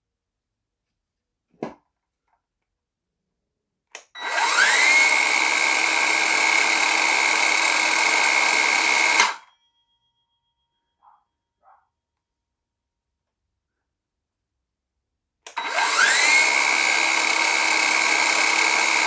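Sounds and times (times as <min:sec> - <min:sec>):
circular saw motor whining: 0:04.2 - 0:09.4, 0:15.6 - 0:19.0.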